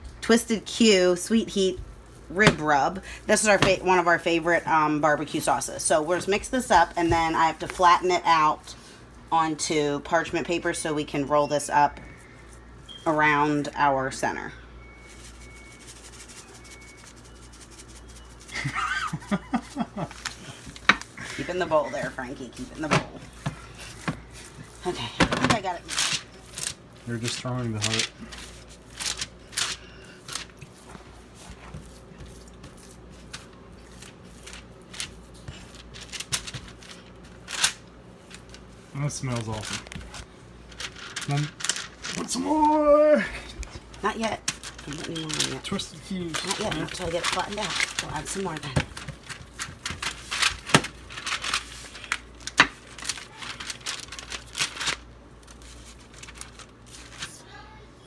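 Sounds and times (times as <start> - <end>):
paper crinkling: 0.7 - 9.8, 15.0 - 57.5
hands working meat in a bowl: 15.0 - 57.4.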